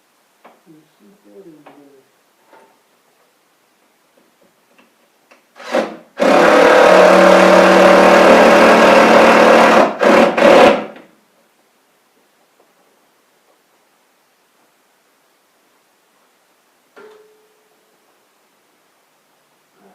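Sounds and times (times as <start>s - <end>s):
power drill driving bolt into wood: 5.5s - 11.1s.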